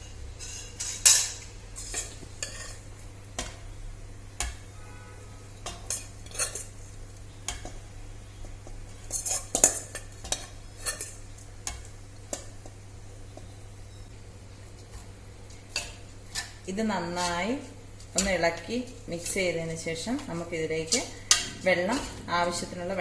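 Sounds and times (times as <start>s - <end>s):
oil sizzling: 0.0s - 23.0s
spoon scraping metal pot: 0.4s - 3.6s, 5.6s - 7.8s, 8.9s - 12.5s, 15.6s - 22.9s.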